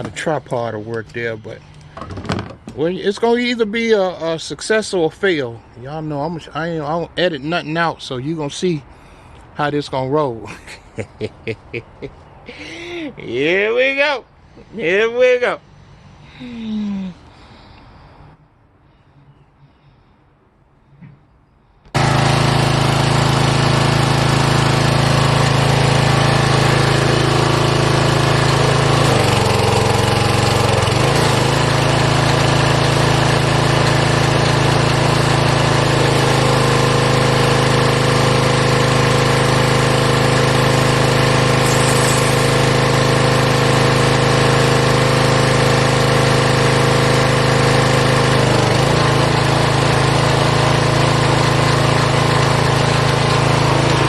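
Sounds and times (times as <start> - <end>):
small gasoline engine running: 22.0 - 54.0.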